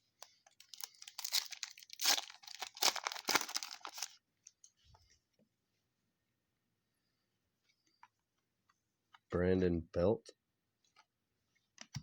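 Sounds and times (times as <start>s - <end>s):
foil wrapper tearing and crinkling: 0.5s - 4.2s.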